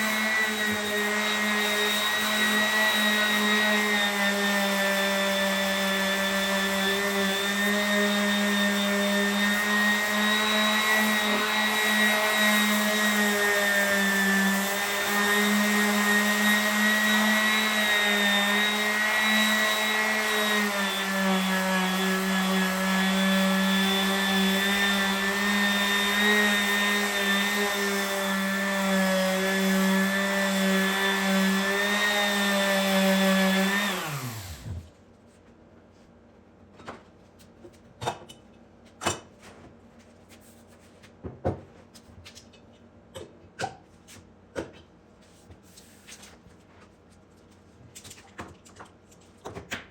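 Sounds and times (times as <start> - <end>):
power sander on wood: 0.0 - 34.9.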